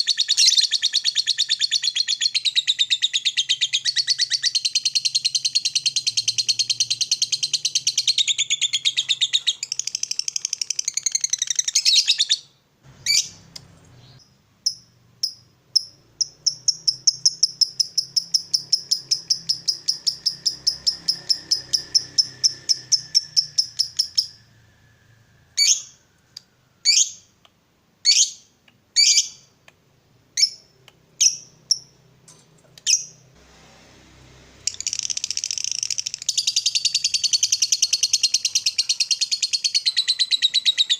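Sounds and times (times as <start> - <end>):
lovebird chattering trill: 14.1 - 24.4, 34.7 - 40.9.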